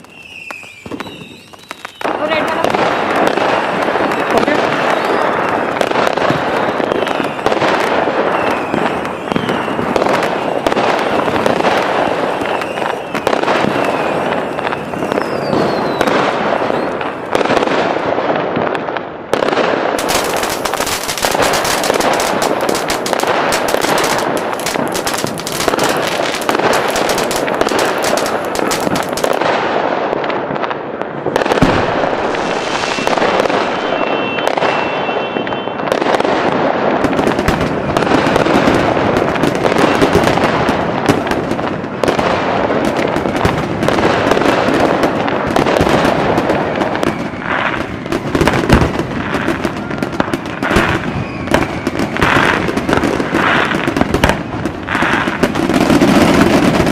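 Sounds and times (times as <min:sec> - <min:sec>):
firework whistles: 0:00.0 - 0:02.6, 0:03.2 - 0:17.2, 0:20.0 - 0:29.4, 0:32.1 - 0:36.1, 0:46.0 - 0:54.0
fireworks bangs and crackling: 0:00.0 - 0:56.9.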